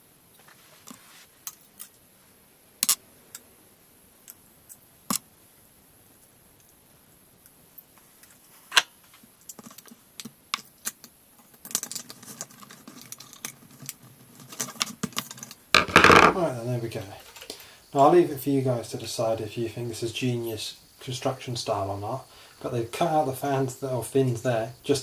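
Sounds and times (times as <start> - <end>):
small clicks and rattles: 9.4 - 16.4.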